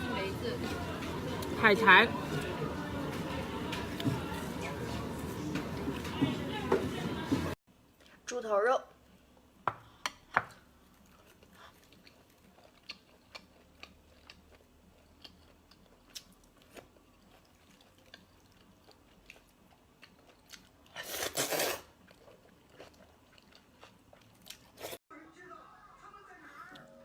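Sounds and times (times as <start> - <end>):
soft wet chewing: 10.7 - 25.0.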